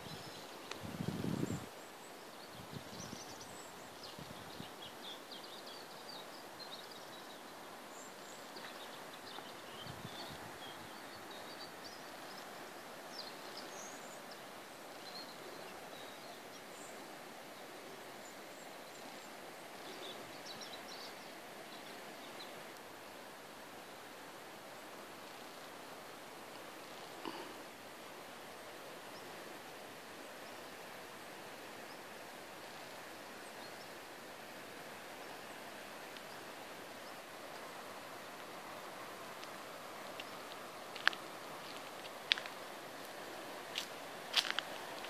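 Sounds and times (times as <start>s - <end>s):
steady background noise: 21.0s - 45.0s.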